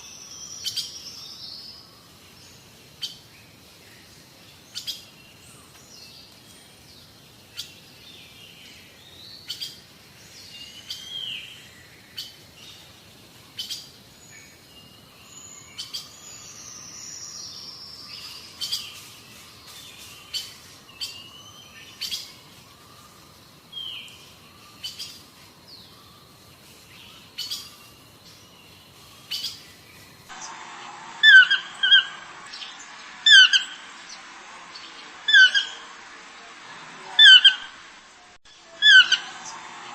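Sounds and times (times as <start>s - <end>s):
faint hiss: 0.0s - 39.9s
deer calls: 35.3s - 35.9s, 37.1s - 37.7s.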